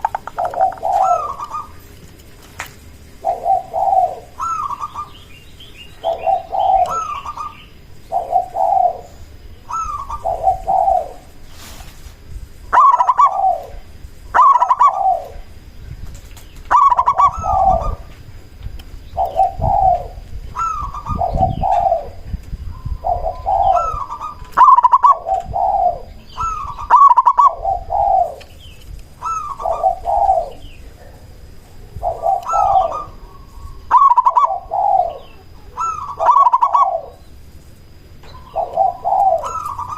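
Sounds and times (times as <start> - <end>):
dove cooing: 0.0 - 2.0, 3.0 - 11.8, 12.6 - 18.3, 19.1 - 37.5, 38.2 - 39.9.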